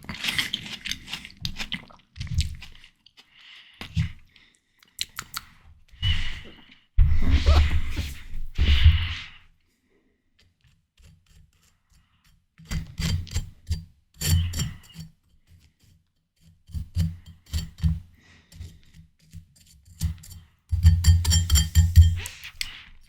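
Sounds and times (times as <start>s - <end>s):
crunching and chewing watermelon: 0.0s - 3.7s.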